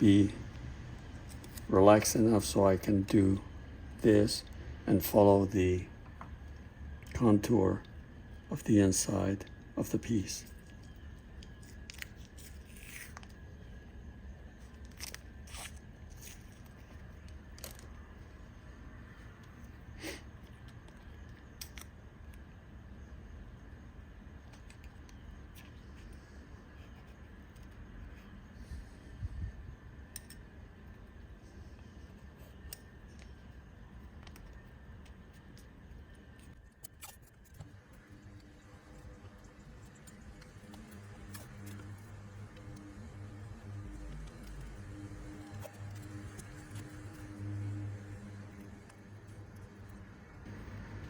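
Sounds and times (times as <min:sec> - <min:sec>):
quiet low hum: 0:00.0 - 0:51.0
masking tape crinkling: 0:34.0 - 0:50.6.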